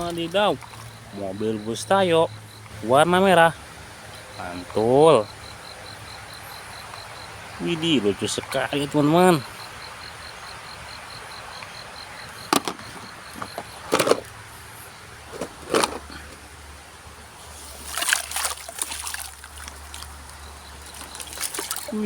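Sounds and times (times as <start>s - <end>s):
insect chirping: 0.0s - 22.0s
plastic toys knocking: 12.5s - 14.3s, 15.3s - 16.4s
scraping and rustling: 12.5s - 14.4s, 15.2s - 16.5s.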